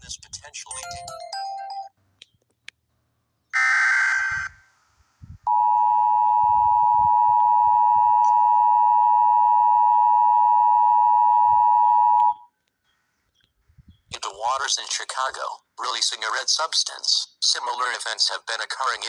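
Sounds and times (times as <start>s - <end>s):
buzzy data burst: 3.6s - 4.7s.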